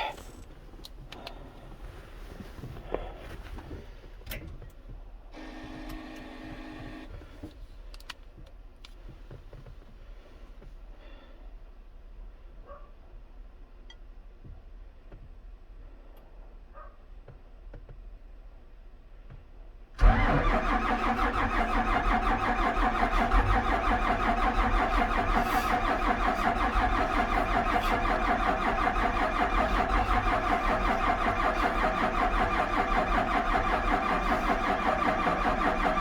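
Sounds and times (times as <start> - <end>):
starter motor cranking diesel engine: 5.4 - 7.2, 20.0 - 36.0.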